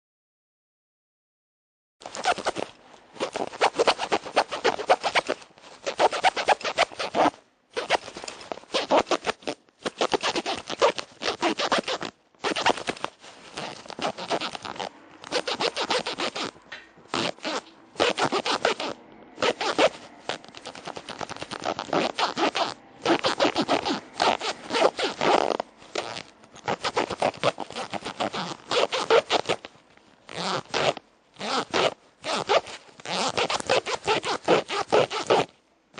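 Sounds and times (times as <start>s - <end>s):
zipper rasping back and forth: 2.0s - 35.6s.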